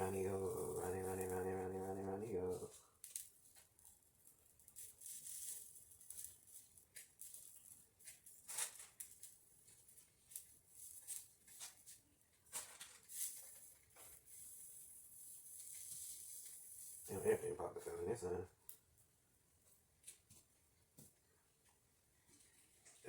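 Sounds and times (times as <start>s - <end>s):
faint irregular clicks and ticks: 0.3s - 17.2s.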